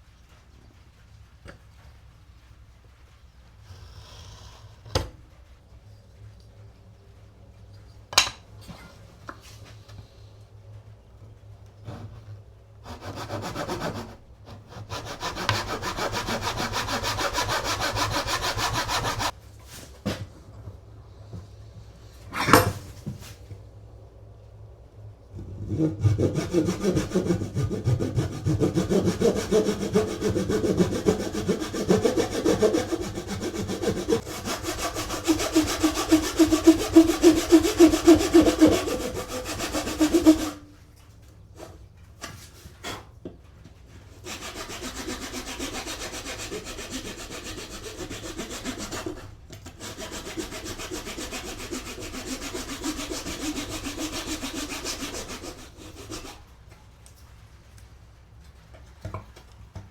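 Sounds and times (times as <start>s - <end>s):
hand saw cutting wood: 11.8s - 19.4s, 25.6s - 40.7s, 44.2s - 56.4s.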